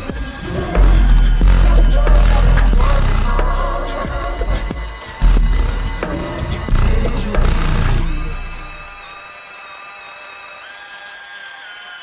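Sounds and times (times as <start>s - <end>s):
music with heavy bass and beat: 0.0s - 9.2s.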